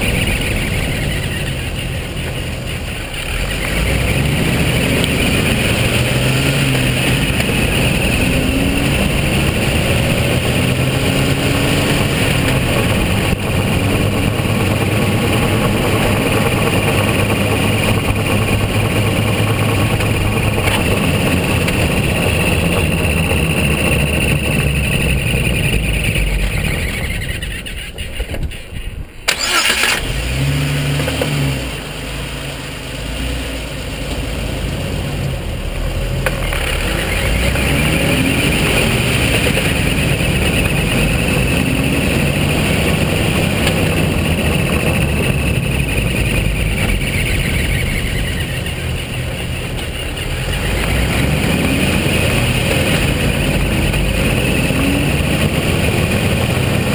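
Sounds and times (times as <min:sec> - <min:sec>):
car engine driving: 0:00.0 - 0:56.9
engine restarting burst: 0:29.2 - 0:30.8.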